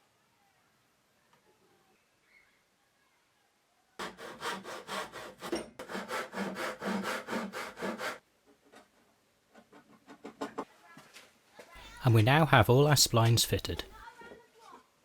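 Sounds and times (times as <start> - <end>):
hand saw cutting wood: 4.0 - 8.2.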